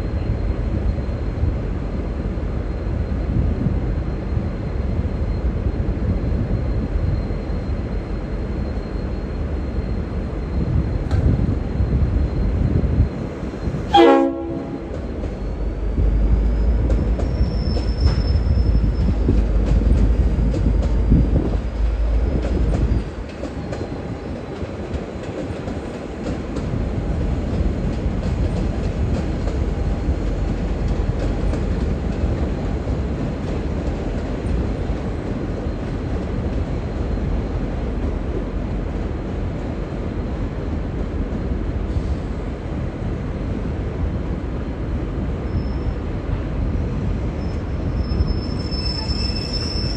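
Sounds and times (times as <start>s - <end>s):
locomotive air horn blast: 13.9s - 15.0s
thin high squeal: 16.5s - 19.2s, 48.0s - 49.9s.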